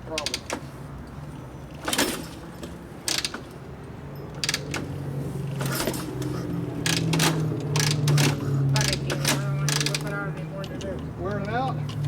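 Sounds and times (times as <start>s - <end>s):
kick-starter clicking and ratcheting: 3.1s - 3.6s, 5.6s - 12.0s.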